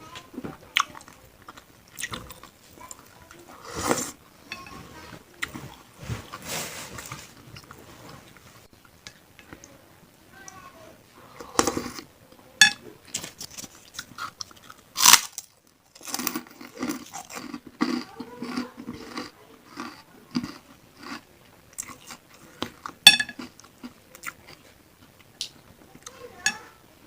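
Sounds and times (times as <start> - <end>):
chewing and biting: 16.0 - 21.2.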